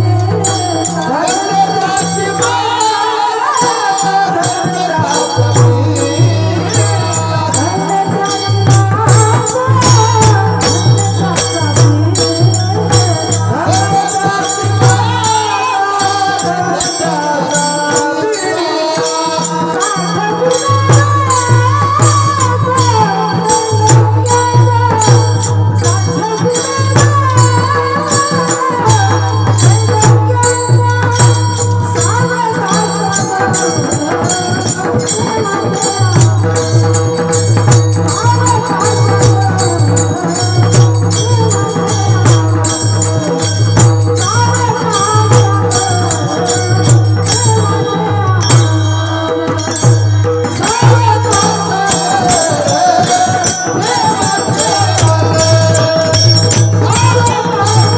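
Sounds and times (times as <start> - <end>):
barrel drum fast rhythm: 0.0 - 57.9.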